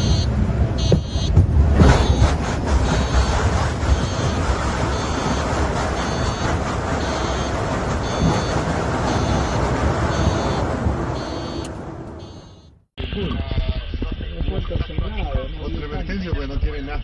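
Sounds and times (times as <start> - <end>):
high electronic beeps: 0.0 - 1.3, 1.9 - 10.6, 11.2 - 12.7
heavy rumble: 0.0 - 17.0.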